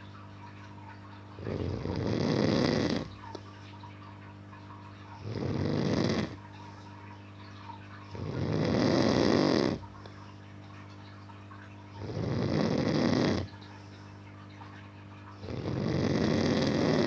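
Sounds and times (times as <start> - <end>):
low steady hum: 0.0 - 17.0
man snoring: 1.5 - 3.1, 5.2 - 6.4, 8.2 - 9.8, 12.0 - 13.5, 15.4 - 17.0.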